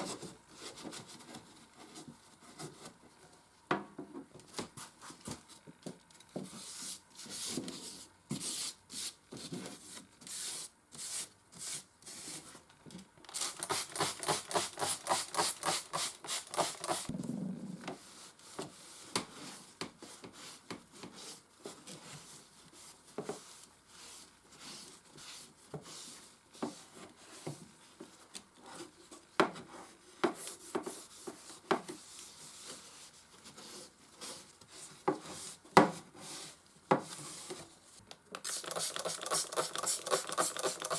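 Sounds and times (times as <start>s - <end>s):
hand scrubbing strokes: 13.4s - 17.1s, 38.4s - 40.9s.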